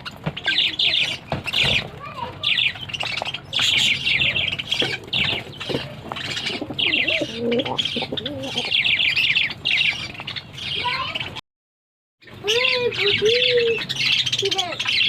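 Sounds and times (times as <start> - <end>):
small birds chirping: 0.0 - 11.4, 12.2 - 15.0
dove cooing: 3.5 - 9.6.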